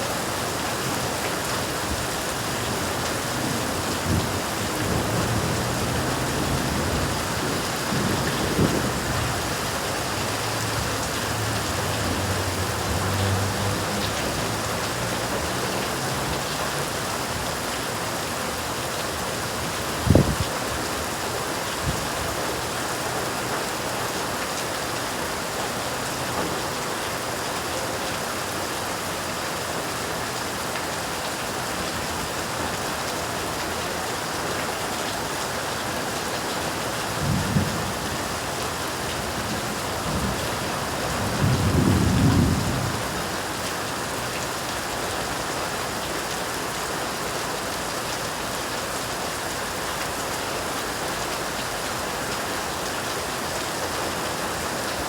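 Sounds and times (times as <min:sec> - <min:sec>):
heavy rain falling: 0:00.0 - 0:55.0
thunder rumbling: 0:03.4 - 0:14.7, 0:39.1 - 0:43.4.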